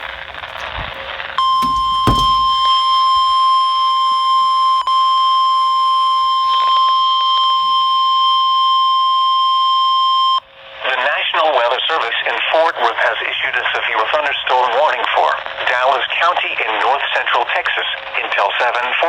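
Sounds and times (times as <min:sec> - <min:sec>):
steady alarm tone: 0:01.4 - 0:07.0.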